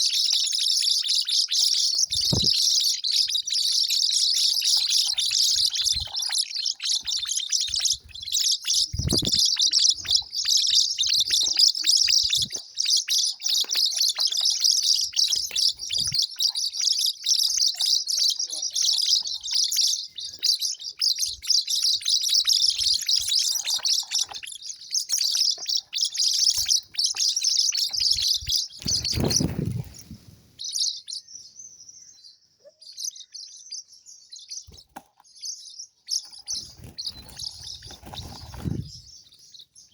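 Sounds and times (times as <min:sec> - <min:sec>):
small birds chirping: 0:00.0 - 0:39.9.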